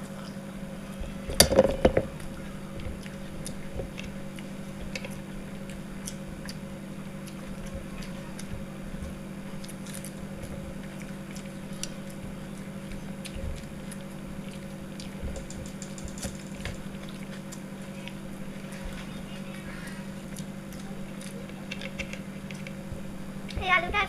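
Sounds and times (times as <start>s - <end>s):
chewing sounds: 0.0s - 24.0s
steady low hum: 0.0s - 24.0s
small clicks and ticks: 15.3s - 16.8s.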